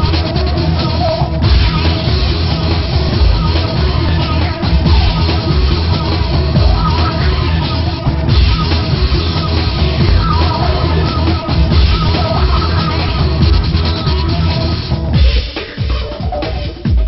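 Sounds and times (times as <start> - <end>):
loud rock music: 0.0 - 17.0.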